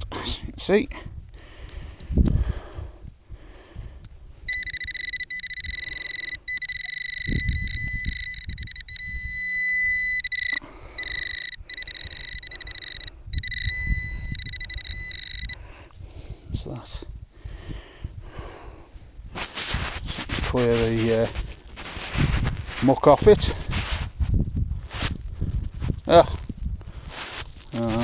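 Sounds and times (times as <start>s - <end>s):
metal detector high-pitched tone: 4.5s - 15.6s.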